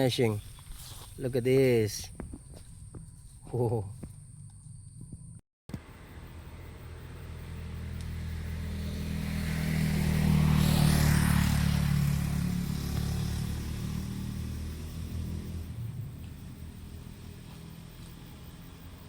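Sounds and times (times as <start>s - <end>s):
vehicle driving past: 5.8s - 19.0s.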